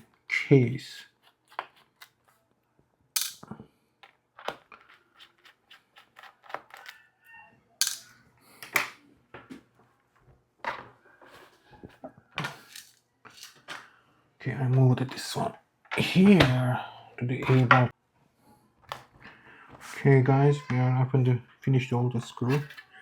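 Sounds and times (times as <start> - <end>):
small metal parts set down: 3.2 - 6.9, 7.8 - 8.9, 12.4 - 13.9.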